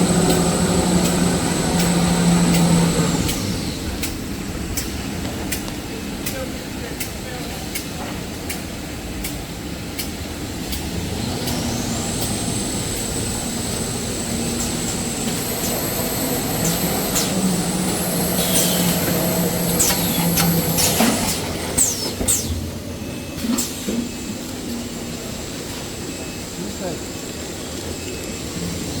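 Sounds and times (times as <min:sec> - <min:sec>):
high machine whine: 0:00.0 - 0:07.6, 0:08.9 - 0:29.0
production line machinery din: 0:00.0 - 0:29.0
machine hisses: 0:10.8 - 0:24.4.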